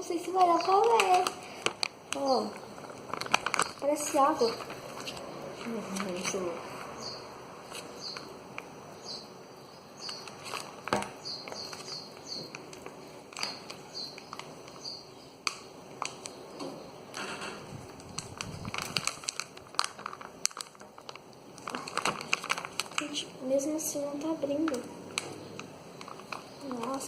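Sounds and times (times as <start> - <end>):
plastic container clicking and crackling: 0.2 - 6.4, 10.0 - 16.7, 18.0 - 23.2, 24.4 - 27.0.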